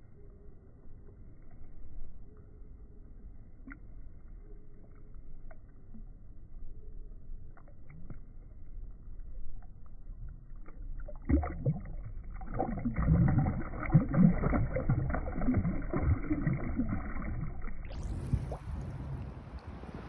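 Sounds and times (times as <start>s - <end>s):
creek water splashing: 10.4s - 20.0s.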